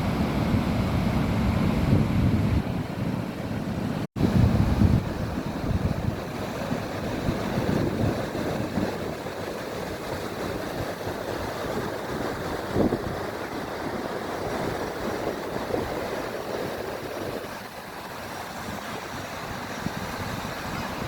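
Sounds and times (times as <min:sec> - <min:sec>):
sea waves washing onto beach: 0:00.0 - 0:21.0
wind buffeting microphone: 0:00.0 - 0:21.0.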